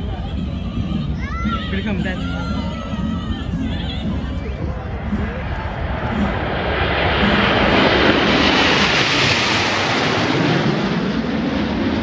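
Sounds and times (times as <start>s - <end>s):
jet aircraft flying past: 3.6s - 12.0s.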